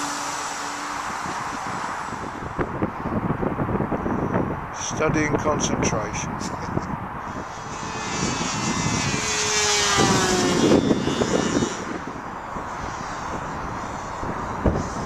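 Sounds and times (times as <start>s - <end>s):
model plane motor flying past: 0.0s - 2.9s, 7.2s - 15.0s.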